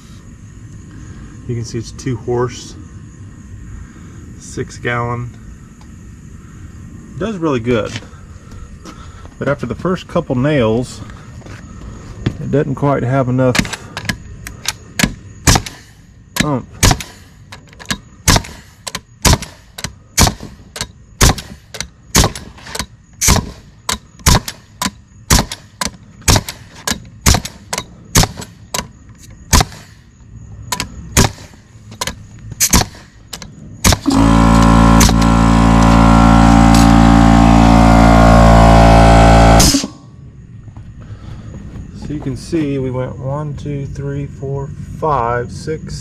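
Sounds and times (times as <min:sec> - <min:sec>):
pneumatic nailer firing: 0:13.6 - 0:28.9, 0:29.5 - 0:30.0, 0:30.7 - 0:40.0
air compressor running: 0:33.8 - 0:39.9.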